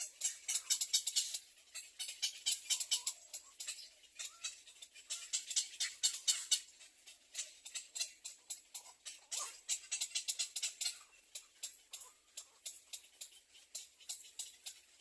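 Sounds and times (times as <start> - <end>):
chicks chirping high-pitched: 0.0 - 15.0.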